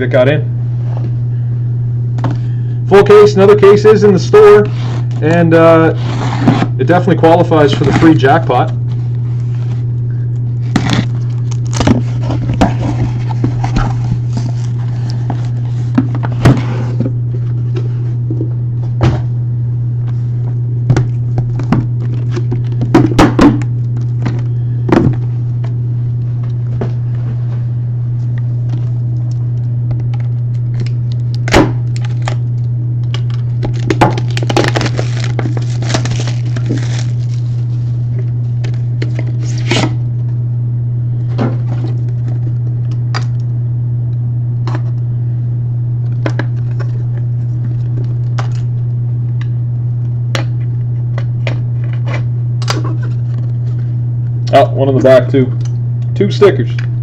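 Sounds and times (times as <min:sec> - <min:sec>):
steady low hum: 0:00.0 - 0:57.0
cardboard scraping and tearing: 0:05.9 - 0:06.8, 0:10.6 - 0:17.0, 0:33.7 - 0:37.7, 0:39.1 - 0:40.0.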